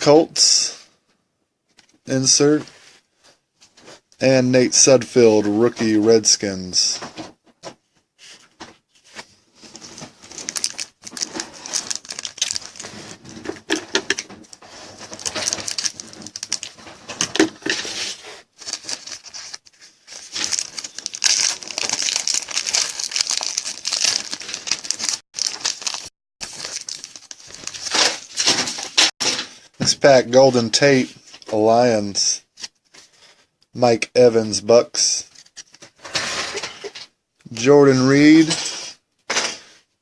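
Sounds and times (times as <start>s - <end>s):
foil wrapper crinkling and tearing: 9.6s - 29.1s.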